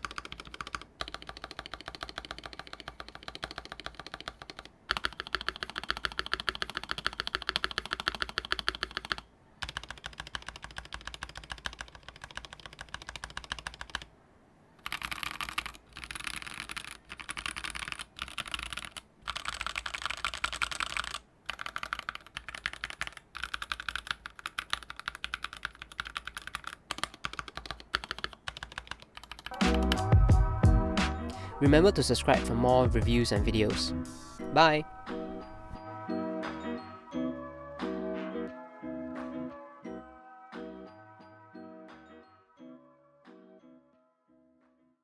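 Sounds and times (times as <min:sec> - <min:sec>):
fast mechanical keyboard typing: 0:00.0 - 0:14.1, 0:14.8 - 0:30.0.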